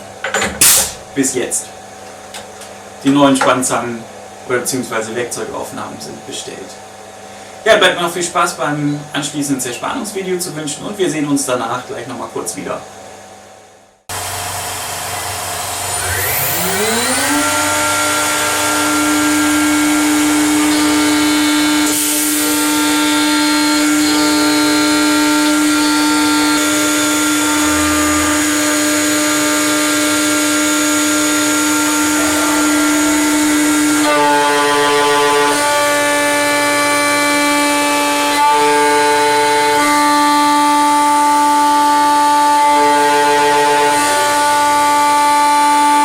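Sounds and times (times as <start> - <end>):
router spindle whining: 14.1 - 46.0.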